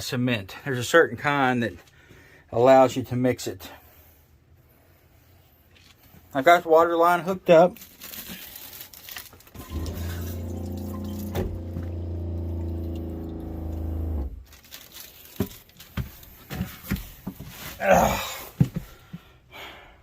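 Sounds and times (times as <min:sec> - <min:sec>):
toilet flushing water: 0:09.6 - 0:14.2
low motor hum: 0:09.6 - 0:14.4.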